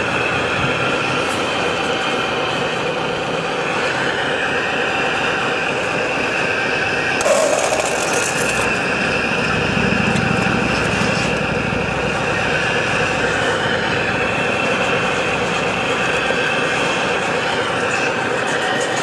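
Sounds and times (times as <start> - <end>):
small electric motors whining: 7.0 - 11.4.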